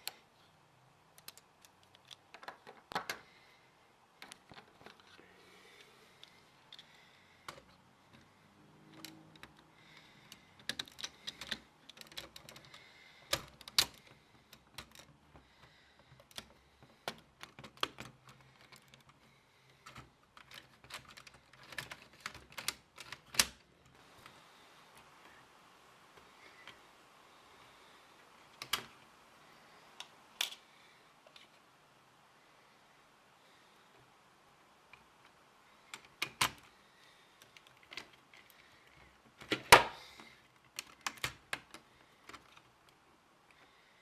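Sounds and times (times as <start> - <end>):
plastic bricks clicking: 1.1 - 3.3, 9.0 - 15.2, 16.0 - 24.0, 37.4 - 43.0
loud plastic snaps: 39.4 - 42.4.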